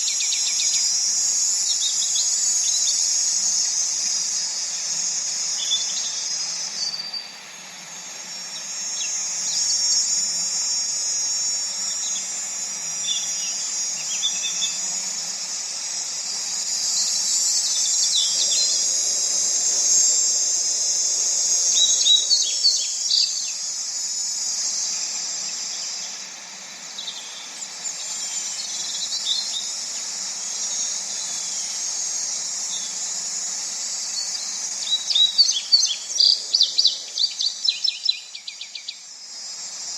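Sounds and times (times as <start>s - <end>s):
insects trilling: 0.0s - 39.9s
birds chirping: 34.1s - 39.1s.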